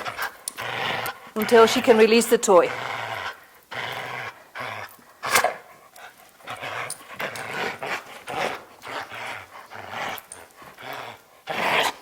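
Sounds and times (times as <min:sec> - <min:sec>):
dog panting: 0:00.0 - 0:12.0.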